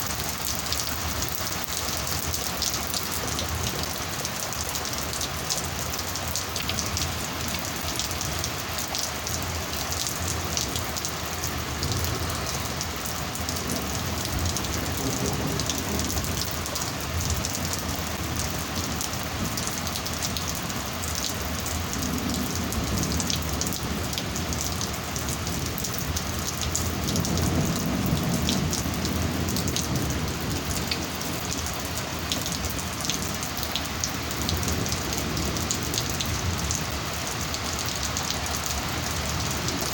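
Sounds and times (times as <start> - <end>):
heavy rain on hard surface: 0.0 - 39.9
low thunder rumbles: 26.5 - 31.9.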